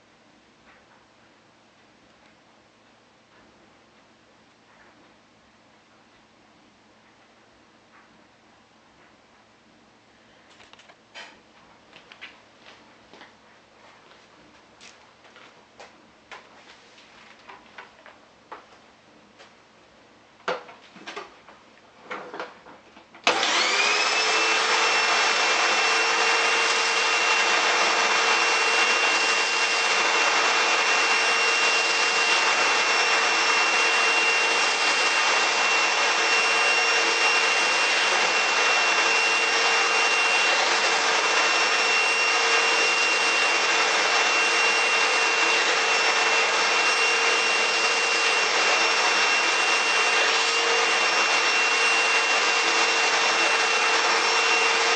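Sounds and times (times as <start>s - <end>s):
vacuum cleaner running: 23.2s - 54.9s.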